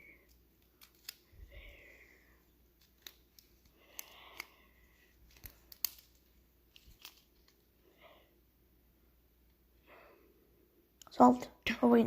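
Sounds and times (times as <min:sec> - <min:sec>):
puzzle cube plastic clicks: 0:00.3 - 0:01.2, 0:05.3 - 0:07.6.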